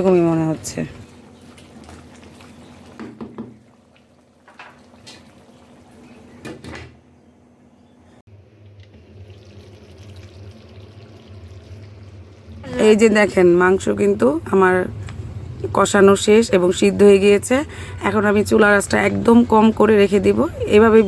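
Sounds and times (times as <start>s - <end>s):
low steady hum: 7.1s - 21.0s.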